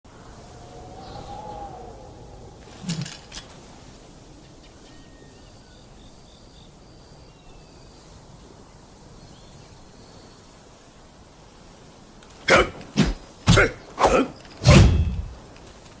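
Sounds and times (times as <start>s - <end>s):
faint bird chirps: 0.2s - 10.8s.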